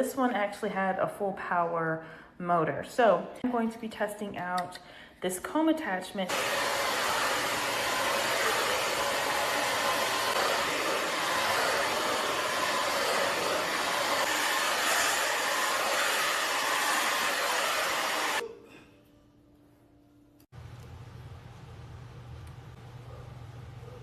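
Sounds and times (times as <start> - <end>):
hair dryer blowing: 6.3 - 18.4.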